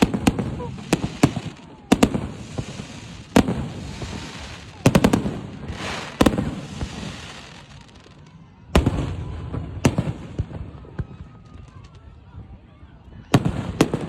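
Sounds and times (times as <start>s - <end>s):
firework hiss: 0.0s - 8.2s
fireworks bangs with echo: 0.0s - 11.9s, 13.2s - 14.0s.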